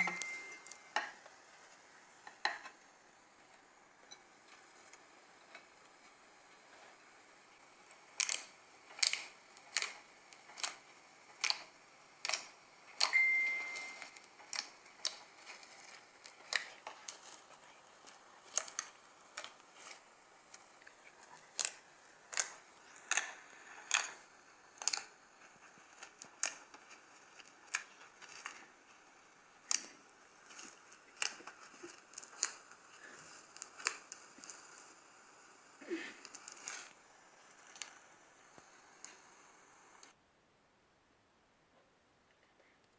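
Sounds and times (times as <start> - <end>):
brief high tone: 0.0 - 0.7, 13.1 - 14.0.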